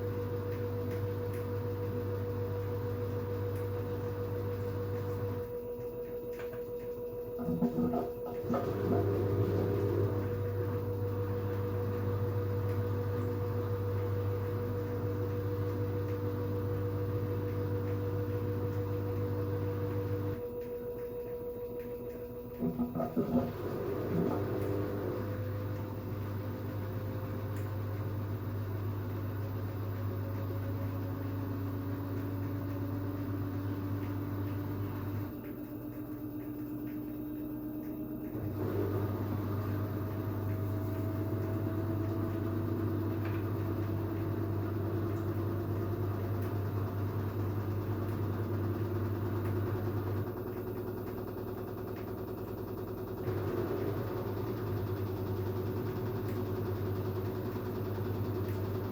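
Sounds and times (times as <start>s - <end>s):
steady low hum: 0.0s - 51.8s
washing machine drum spinning: 0.0s - 58.9s
motor whine rising in pitch: 4.5s - 12.7s, 17.8s - 27.6s, 30.6s - 50.3s.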